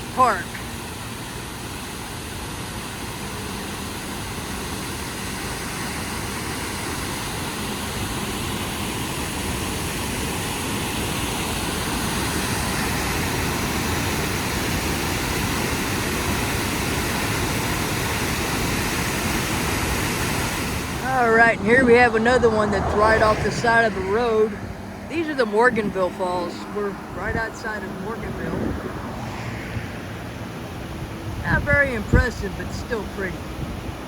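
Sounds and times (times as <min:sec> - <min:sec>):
waterfall rushing: 0:00.0 - 0:28.7.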